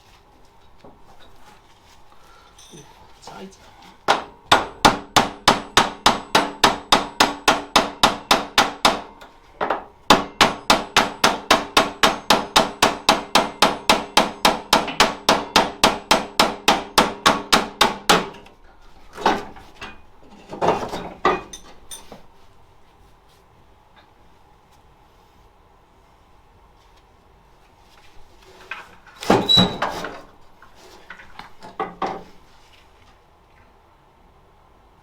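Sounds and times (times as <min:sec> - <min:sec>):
hammer striking ringing metal: 0:10.1 - 0:18.3.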